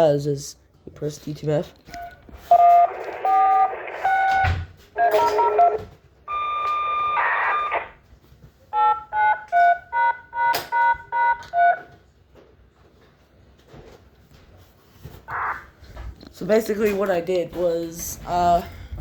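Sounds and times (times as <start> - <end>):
paired touch-tone beeps: 1.9 - 7.8, 8.8 - 11.9.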